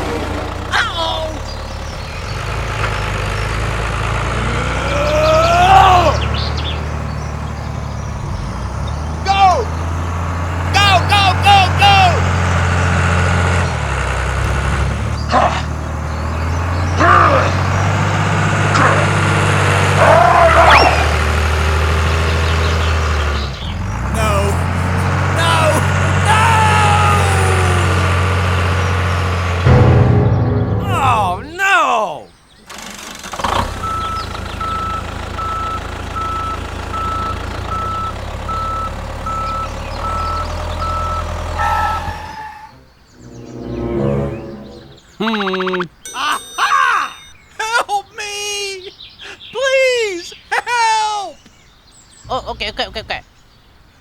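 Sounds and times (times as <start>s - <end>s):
small tractor motor humming: 0.0s - 29.7s, 32.7s - 42.3s
engine rumble: 0.0s - 45.2s, 52.1s - 53.5s
high yelping calls: 19.9s - 21.4s, 39.4s - 43.2s, 44.8s - 47.6s
vehicle reversing alarm beeping: 33.8s - 47.4s.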